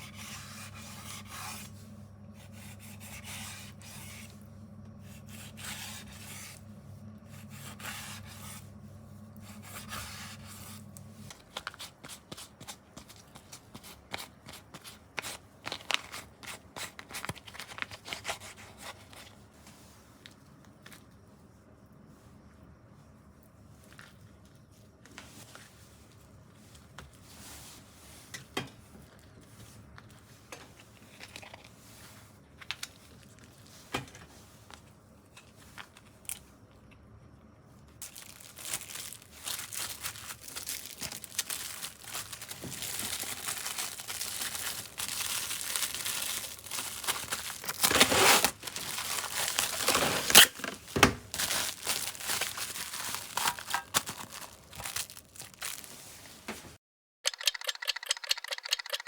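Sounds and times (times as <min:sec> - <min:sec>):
crinkling thin material: 0:38.0 - 0:56.6.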